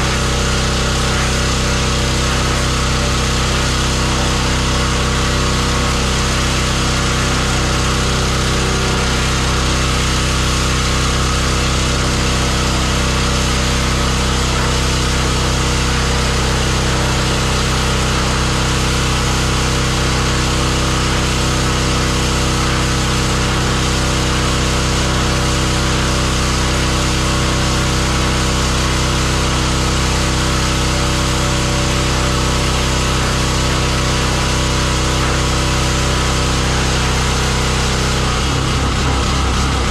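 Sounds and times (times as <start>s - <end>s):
pressure washer running: 0.0s - 39.9s.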